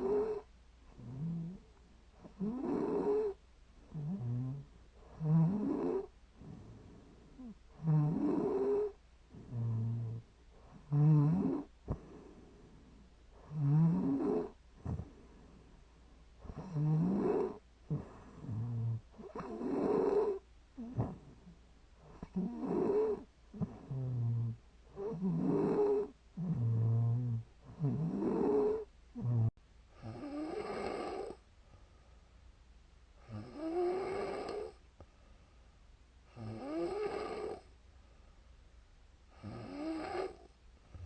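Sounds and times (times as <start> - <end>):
woman snoring: 0.0 - 1.6, 2.2 - 6.6, 7.4 - 12.0, 13.4 - 15.1, 16.4 - 21.4, 22.0 - 31.4, 33.2 - 34.8, 36.3 - 37.7, 39.4 - 40.5.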